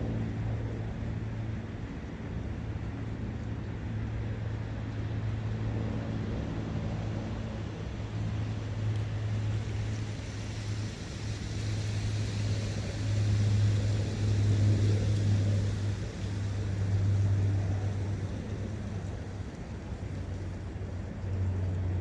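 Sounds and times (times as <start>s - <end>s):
low hum: 0.0s - 22.0s
brook hiss: 9.4s - 18.2s.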